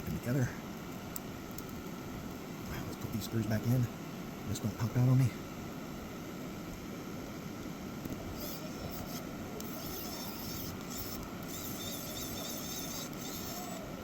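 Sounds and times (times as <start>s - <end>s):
steady background hum: 0.0s - 14.0s
electric screwdriver whirring: 8.4s - 13.9s.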